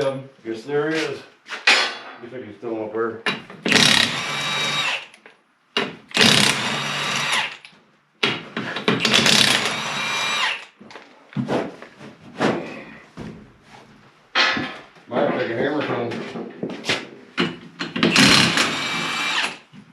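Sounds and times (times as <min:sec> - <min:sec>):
impact wrench whining: 0:03.6 - 0:05.2, 0:05.8 - 0:07.7, 0:08.8 - 0:10.8, 0:17.8 - 0:19.7.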